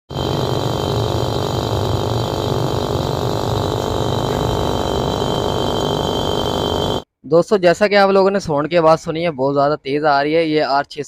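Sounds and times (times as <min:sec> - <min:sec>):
refrigerator compressor loud hum: 0:00.1 - 0:07.0.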